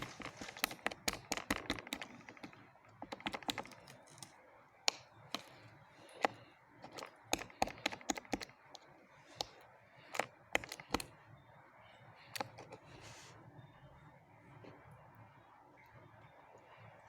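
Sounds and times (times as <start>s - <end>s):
sharp clicks and taps: 0.0s - 11.1s, 12.3s - 12.8s.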